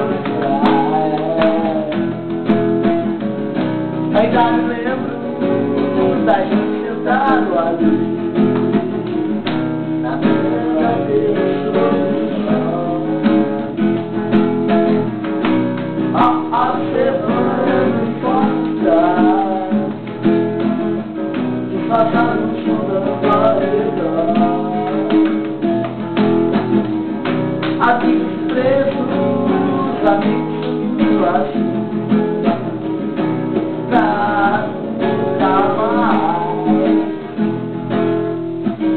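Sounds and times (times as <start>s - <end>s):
voices singing along: 0.0s - 2.6s, 10.0s - 14.0s, 16.1s - 20.1s, 21.7s - 25.5s, 27.8s - 31.7s, 33.8s - 37.3s
acoustic guitar strumming: 0.0s - 38.9s.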